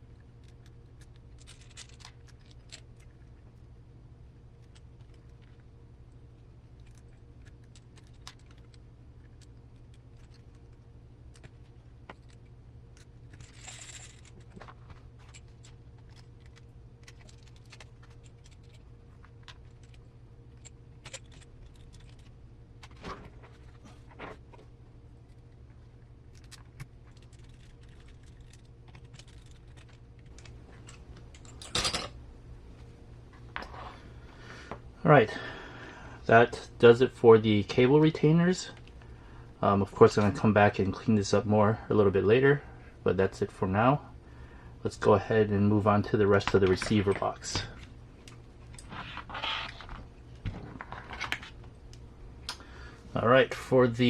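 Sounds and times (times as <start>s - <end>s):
steady low hum: 0.0s - 54.0s
plastic parts clicking and rattling: 0.3s - 3.4s, 6.8s - 24.6s, 25.3s - 32.1s.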